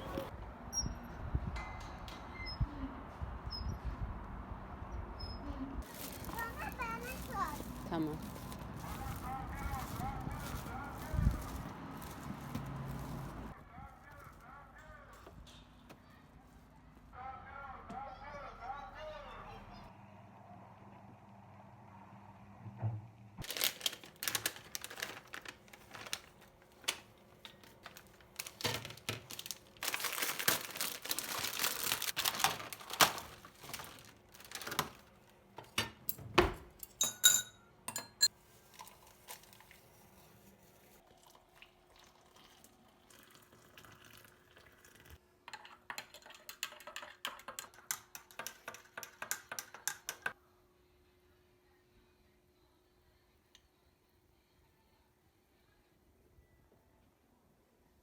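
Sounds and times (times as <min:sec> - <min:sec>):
objects clattering: 0:05.8 - 0:13.5, 0:23.5 - 0:35.0
ringing clink: 0:37.0 - 0:38.3.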